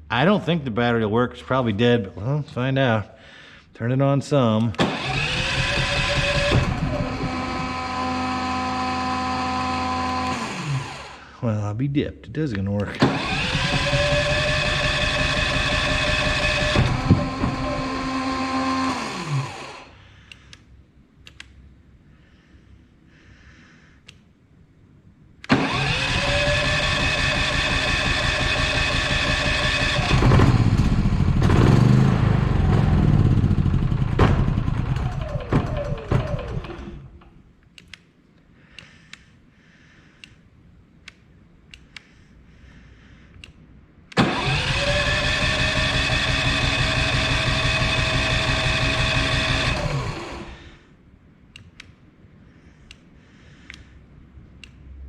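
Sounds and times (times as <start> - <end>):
portable generator running: 4.7 - 11.4, 12.9 - 20.0, 25.4 - 37.4, 44.1 - 50.8
generator spinning down: 4.8 - 11.3, 13.0 - 19.9, 25.5 - 37.3, 44.2 - 50.8.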